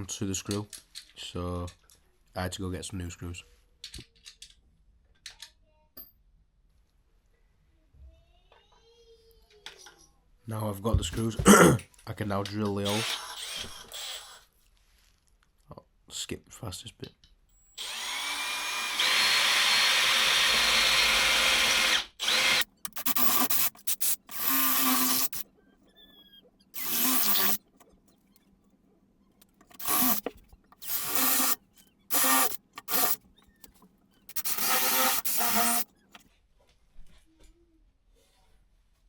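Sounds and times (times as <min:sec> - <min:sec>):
power drill drilling into wall: 0:12.8 - 0:14.4, 0:17.7 - 0:25.4, 0:26.8 - 0:27.6, 0:29.7 - 0:33.2, 0:34.3 - 0:35.9.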